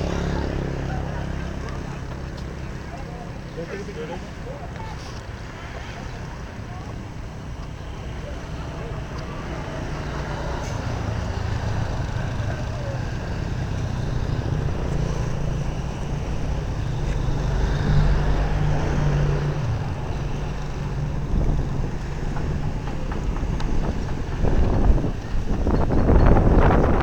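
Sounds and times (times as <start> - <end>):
engine droning: 0.0 - 27.0.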